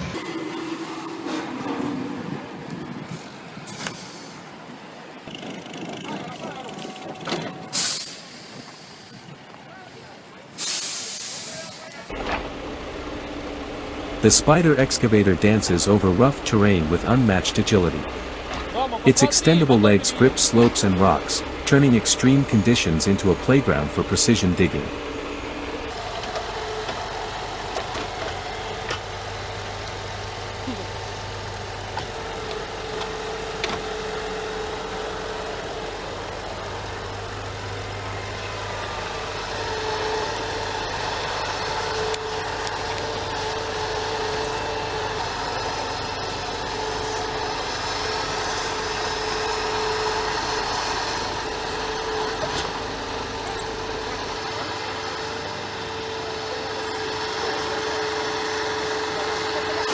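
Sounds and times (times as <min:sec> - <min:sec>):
diesel engine running: 0:12.1 - 0:59.9.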